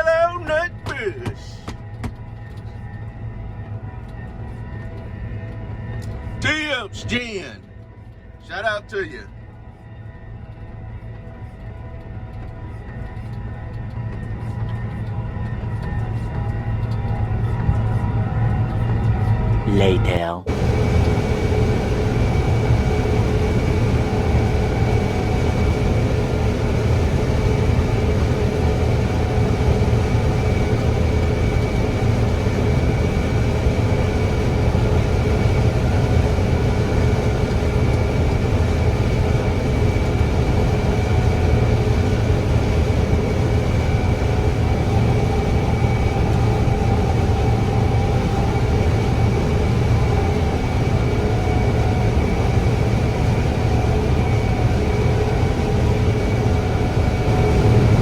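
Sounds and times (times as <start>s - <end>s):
truck engine drone: 20.5s - 58.0s.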